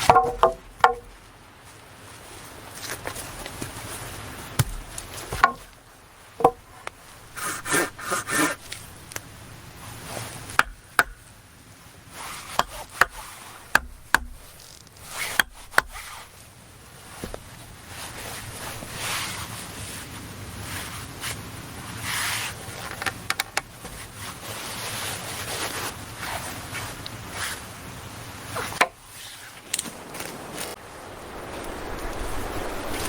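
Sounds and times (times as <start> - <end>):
sharp knocks and clicks: 0.0 - 1.2, 4.6 - 5.8, 10.4 - 11.3, 12.4 - 16.1
short scraping rubs: 6.4 - 11.3, 12.1 - 16.4.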